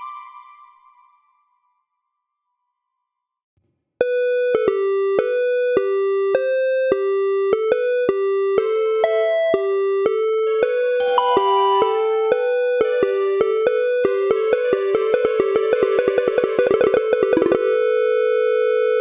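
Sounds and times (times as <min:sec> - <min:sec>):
chiptune synth melody: 0:04.1 - 0:17.9.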